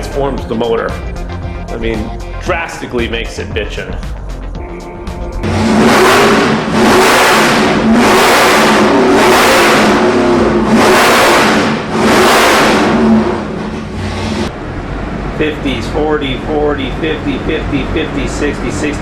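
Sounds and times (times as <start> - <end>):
engine revving loudly: 5.0 - 15.7.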